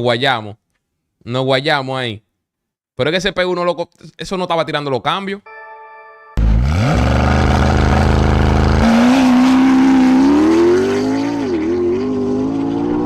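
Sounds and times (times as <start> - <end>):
sports car engine accelerating: 6.4 - 13.0.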